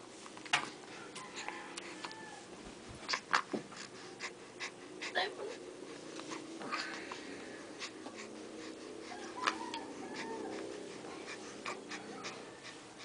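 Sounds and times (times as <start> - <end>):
soft whine: 0.0 - 13.0
wheezy snuffly breathing: 3.0 - 13.0.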